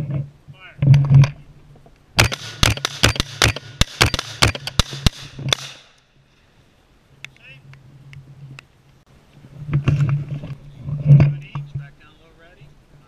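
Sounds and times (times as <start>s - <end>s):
rifle shots with echo: 2.2s - 6.0s.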